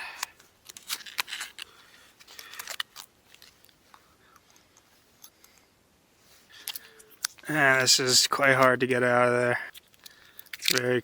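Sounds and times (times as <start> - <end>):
foil pouch crinkling and rustling: 0.2 - 3.8.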